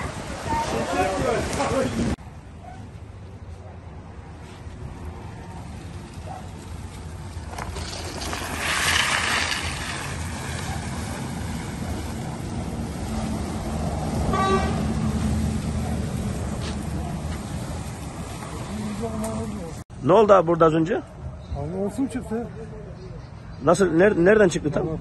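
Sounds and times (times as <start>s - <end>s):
traffic rumble: 0.0s - 25.0s
car horn toot: 14.3s - 14.9s.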